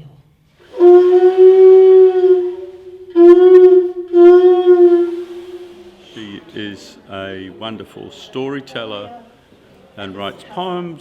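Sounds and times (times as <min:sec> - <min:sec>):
wind instrument held notes: 0:00.6 - 0:06.4.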